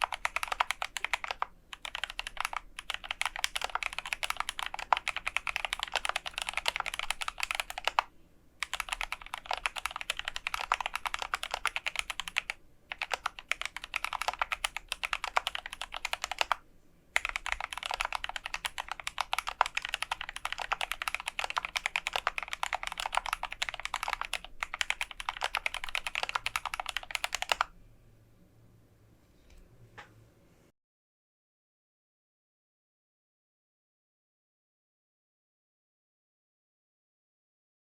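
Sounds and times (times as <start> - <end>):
fast typing on mechanical keyboard: 0.0 - 16.6, 17.2 - 27.7.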